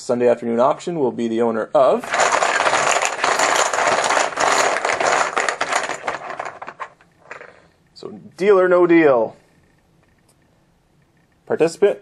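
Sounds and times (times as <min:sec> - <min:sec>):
chips rattling together: 0:02.0 - 0:07.6.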